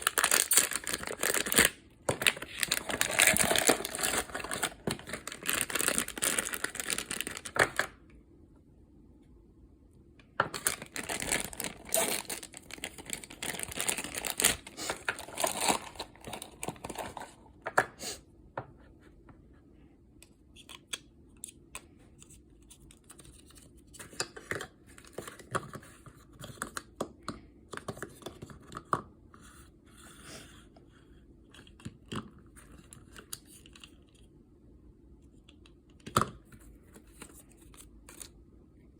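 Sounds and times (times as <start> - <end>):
wrapping torn and crinkled: 0.0 - 7.9, 10.6 - 17.3.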